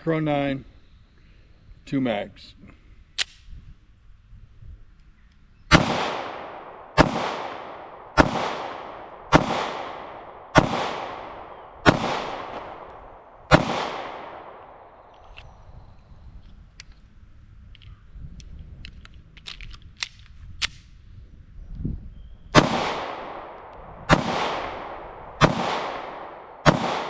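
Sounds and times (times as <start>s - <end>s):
pistol shots with echo: 5.7s - 15.1s, 22.6s - 27.0s.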